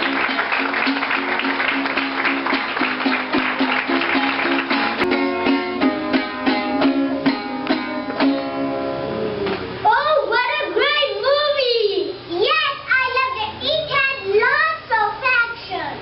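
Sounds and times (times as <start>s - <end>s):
plucked string music: 0.0s - 9.8s.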